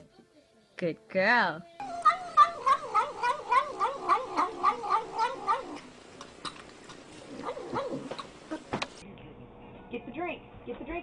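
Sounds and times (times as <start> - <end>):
animal wavering call: 1.8 - 5.9.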